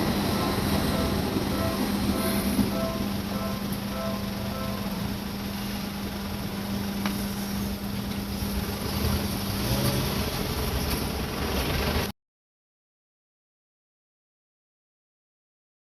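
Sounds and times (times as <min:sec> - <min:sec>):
steady low hum: 0:00.0 - 0:09.4
rumble of traffic engines and tyres: 0:00.0 - 0:12.1.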